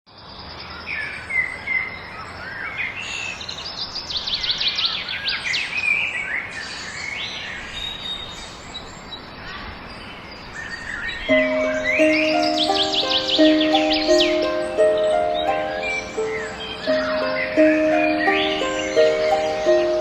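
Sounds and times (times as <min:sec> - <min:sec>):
songbirds singing and calling: 0:00.1 - 0:20.0
background hiss: 0:11.3 - 0:20.0
quick down-slurred bird notes: 0:11.3 - 0:20.0.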